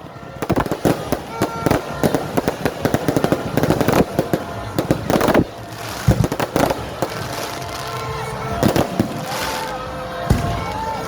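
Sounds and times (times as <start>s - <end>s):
fireworks bangs and crackling: 0.0s - 11.0s.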